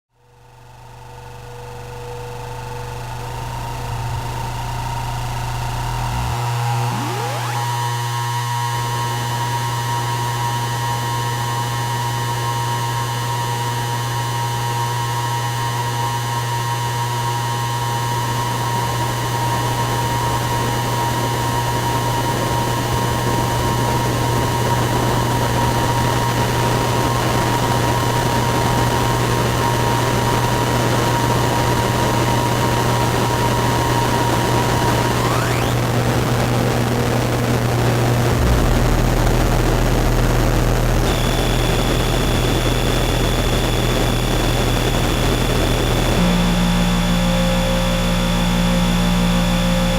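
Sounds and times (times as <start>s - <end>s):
electronic synthesizer drone: 2.4s - 8.9s, 33.7s - 49.9s.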